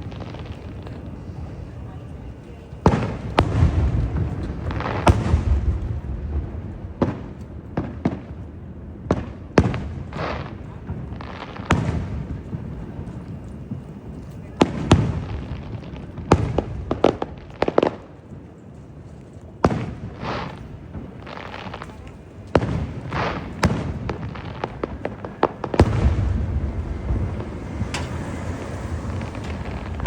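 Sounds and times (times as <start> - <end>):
low rumbling booms: 0.0 - 7.1, 22.6 - 30.0
fireworks bangs: 0.0 - 30.0
fireworks crackling hiss: 0.0 - 30.0.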